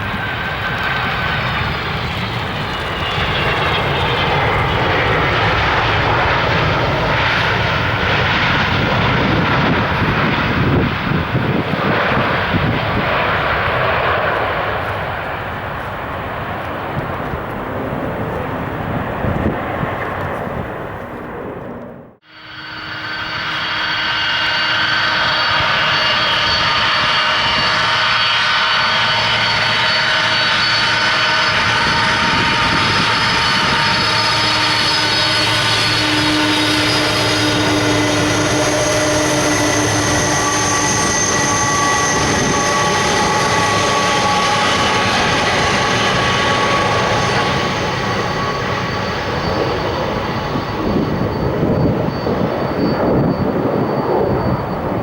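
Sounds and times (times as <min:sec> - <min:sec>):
jet engines running loud: 0:00.0 - 0:55.0
whining tones: 0:22.2 - 0:55.0.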